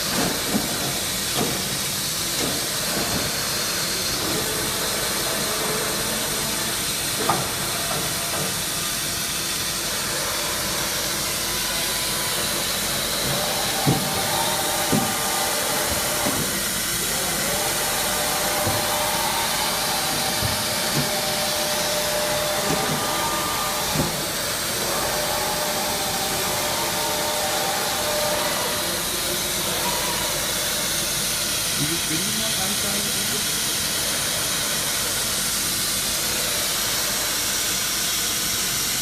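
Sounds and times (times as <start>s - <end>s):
milling machine hiss: 0.0s - 39.0s
motor whine: 11.2s - 30.4s.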